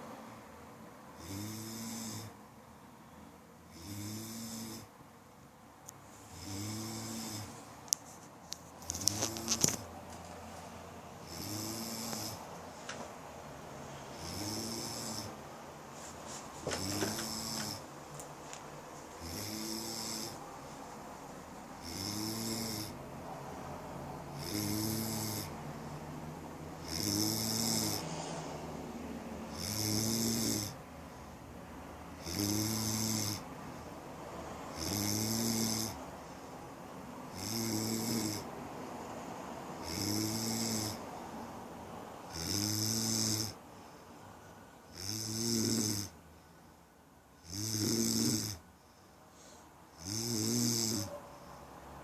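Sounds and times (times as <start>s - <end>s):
person snoring: 1.2s - 2.4s, 3.7s - 4.9s, 6.3s - 7.6s, 11.2s - 12.4s, 14.1s - 15.4s, 16.7s - 17.9s, 19.2s - 20.4s, 21.8s - 23.0s, 24.4s - 25.6s, 26.8s - 28.3s, 29.5s - 30.8s, 32.2s - 33.4s, 34.7s - 36.0s, 37.3s - 38.5s, 39.8s - 41.0s, 42.3s - 43.6s, 44.9s - 46.2s, 47.4s - 48.6s, 49.9s - 51.1s.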